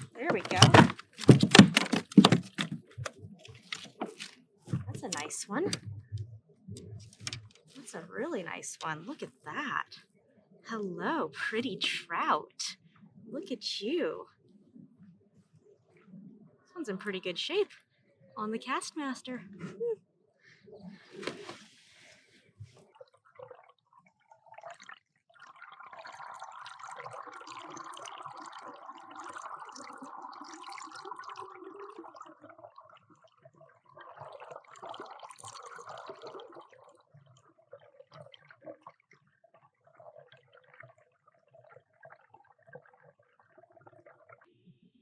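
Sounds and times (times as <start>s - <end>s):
water splashing and dripping: 0.0s - 9.3s, 22.6s - 44.5s.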